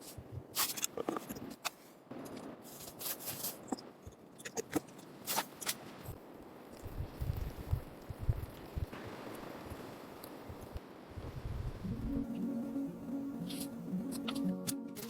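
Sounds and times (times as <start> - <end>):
crisp rustling and scraping: 2.6 - 3.8.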